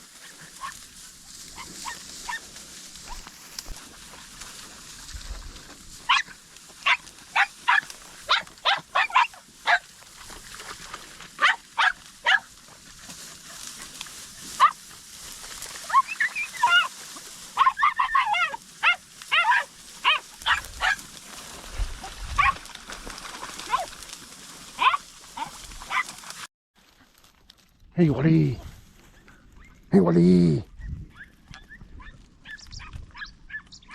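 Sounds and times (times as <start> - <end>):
hounds barking in high yelps: 0.1 - 3.3, 6.0 - 10.0, 11.3 - 15.0, 15.6 - 21.2, 21.9 - 22.7, 23.5 - 24.0, 24.8 - 26.4, 30.8 - 33.9.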